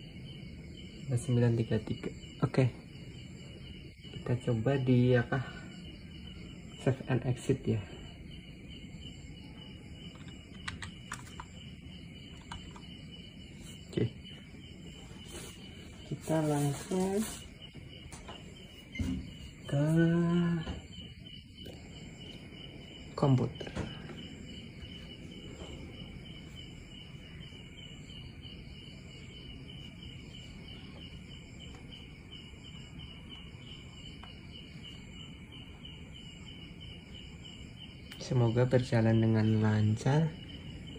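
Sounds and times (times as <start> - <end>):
background hiss: 0.0 - 40.9
insects chirping: 0.0 - 40.9
computer input clicks: 10.1 - 11.5.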